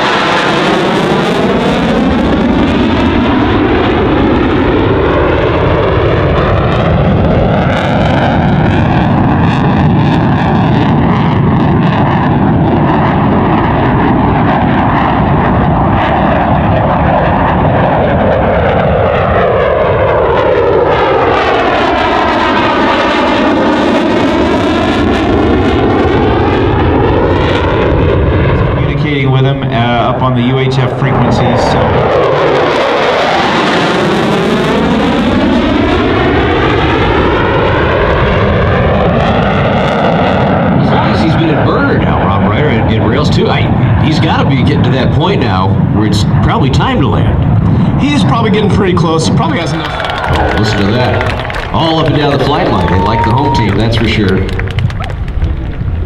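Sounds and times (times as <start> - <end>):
jet passing whoosh: 0.0 - 42.0, 45.5 - 56.0
jet engines roaring: 0.0 - 56.0.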